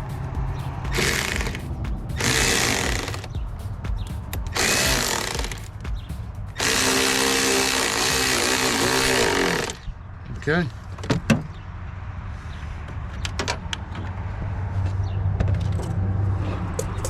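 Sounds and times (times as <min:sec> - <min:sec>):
background music with steady beat: 0:00.0 - 0:09.8
power drill driving screws: 0:00.9 - 0:01.6, 0:02.2 - 0:03.2, 0:04.6 - 0:05.6, 0:06.6 - 0:09.8.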